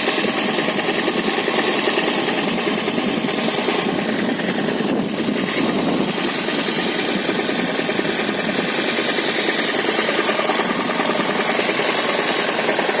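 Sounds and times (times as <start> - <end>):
car engine knocking: 0.0 - 13.0.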